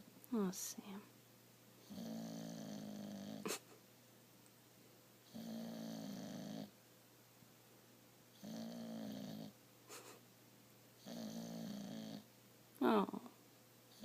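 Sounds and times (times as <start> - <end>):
person snoring: 5.3 - 6.7, 8.4 - 9.5, 11.0 - 12.2.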